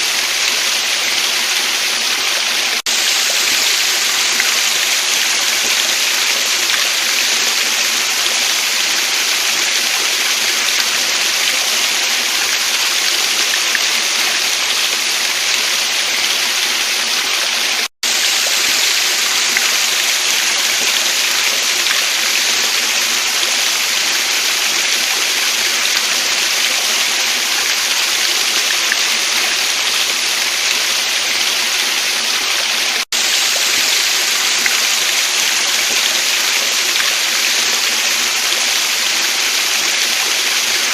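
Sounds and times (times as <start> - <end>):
rush of falling water: 0.0 - 40.9.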